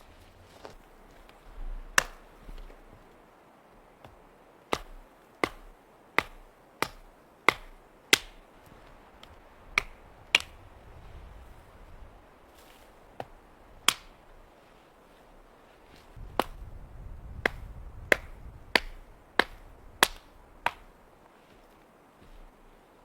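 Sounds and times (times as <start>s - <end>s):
chopping strikes on wood: 1.9s - 2.8s, 4.0s - 8.4s, 9.7s - 10.6s, 13.2s - 14.2s, 16.3s - 16.7s, 17.4s - 21.0s.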